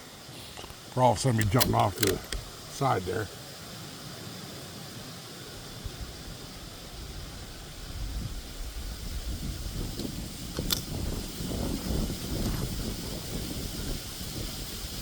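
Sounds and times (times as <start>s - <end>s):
sharp click: 0.6s - 2.5s
wind buffeting microphone: 5.7s - 15.0s.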